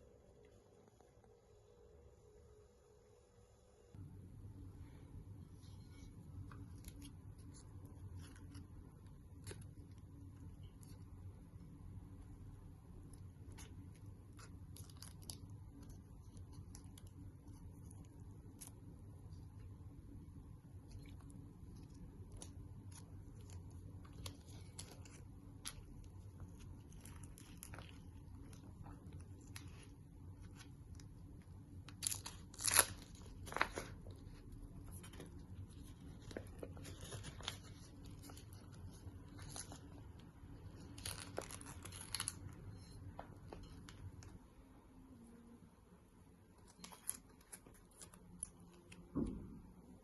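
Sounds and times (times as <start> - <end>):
leaves rustling and tearing: 31.8 - 42.5.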